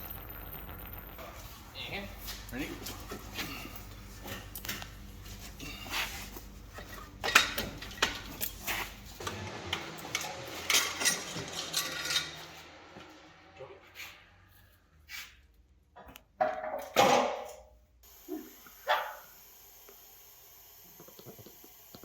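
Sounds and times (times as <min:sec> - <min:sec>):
metal tools clinking and knocking: 0:10.6 - 0:12.6.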